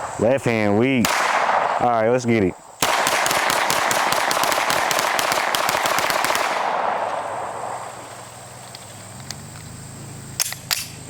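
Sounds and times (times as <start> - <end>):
rapid pistol fire: 1.0 - 2.1, 2.7 - 8.4.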